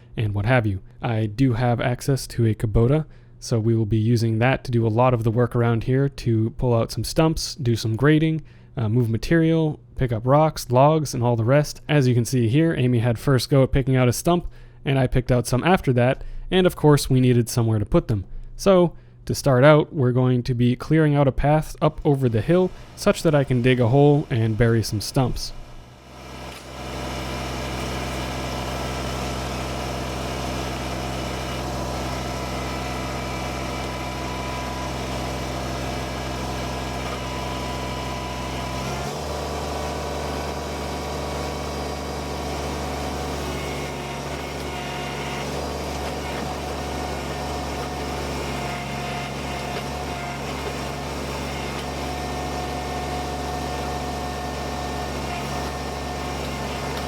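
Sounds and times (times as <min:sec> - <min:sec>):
diesel engine running: 0:25.4 - 0:57.0.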